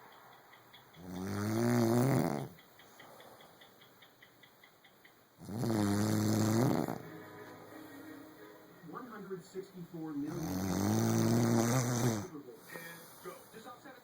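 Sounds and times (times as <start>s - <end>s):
person snoring: 1.0s - 2.6s, 5.4s - 7.0s, 10.3s - 12.3s.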